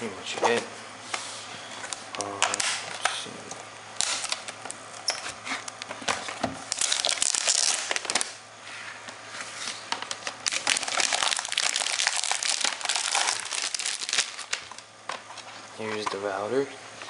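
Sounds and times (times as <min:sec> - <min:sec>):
packaging crinkling and rustling: 0:04.0 - 0:04.8, 0:05.6 - 0:08.4, 0:09.6 - 0:16.0.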